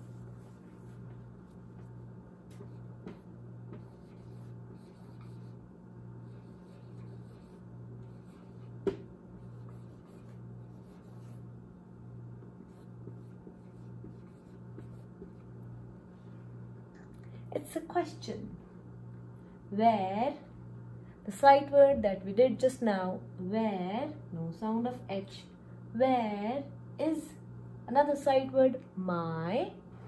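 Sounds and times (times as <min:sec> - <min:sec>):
pen scratching and tapping: 0:02.5 - 0:05.5, 0:12.7 - 0:15.5.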